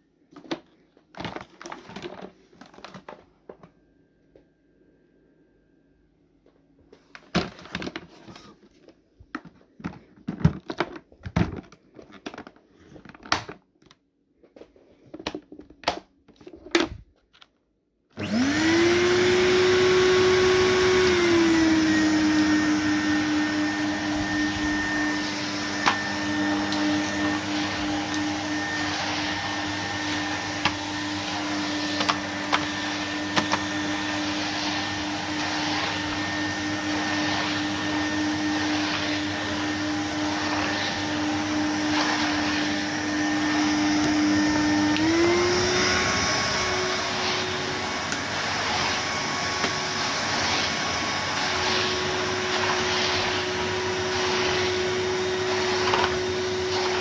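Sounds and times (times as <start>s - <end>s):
vacuum cleaner motor whining: 18.2s - 57.0s.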